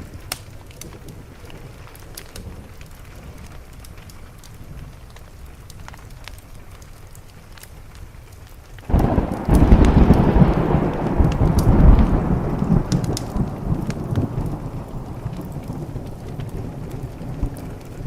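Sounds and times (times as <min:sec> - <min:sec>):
steady rain: 0:00.0 - 0:18.0
wood fire crackling: 0:00.0 - 0:18.0
thunder rumbling: 0:08.9 - 0:18.0.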